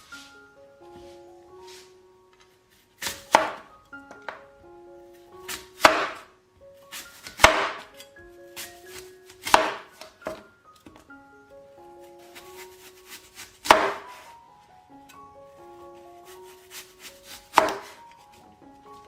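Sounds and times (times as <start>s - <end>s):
background melody: 0.0s - 19.0s
knife chopping on cutting board: 3.0s - 3.6s, 5.5s - 6.2s, 6.9s - 8.0s, 8.6s - 10.4s, 13.4s - 14.2s, 16.7s - 18.1s.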